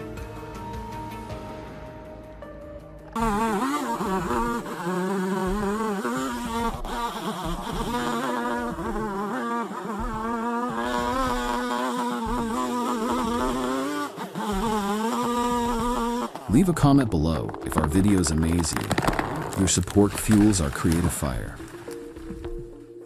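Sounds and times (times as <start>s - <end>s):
chainsaw engine at high revs: 3.2s - 16.5s.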